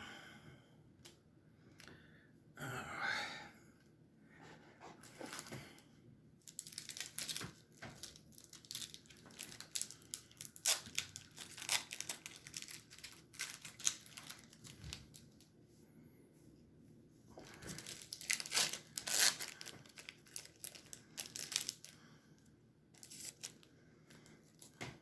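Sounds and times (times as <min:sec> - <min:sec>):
card wrapper crinkling and rustling: 0:06.4 - 0:15.5, 0:17.4 - 0:22.0, 0:23.0 - 0:24.8.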